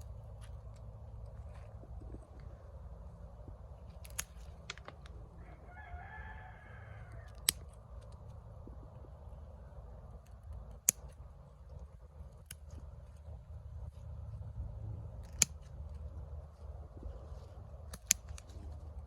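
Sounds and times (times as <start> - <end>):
scissors snipping stems: 3.9 - 5.1, 7.3 - 8.3, 10.2 - 11.4, 12.2 - 13.2, 15.1 - 16.1, 17.8 - 19.0
rooster crowing: 5.4 - 7.5.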